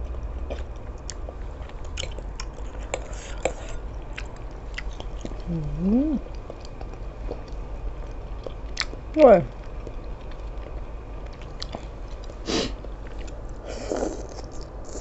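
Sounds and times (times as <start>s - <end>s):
person chewing with mouth clicks: 0.1s - 15.0s
person humming: 5.4s - 6.3s.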